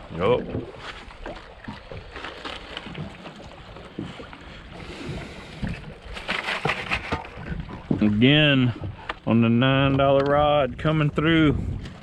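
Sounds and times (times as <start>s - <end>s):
wind noise on microphone: 9.8s - 12.0s.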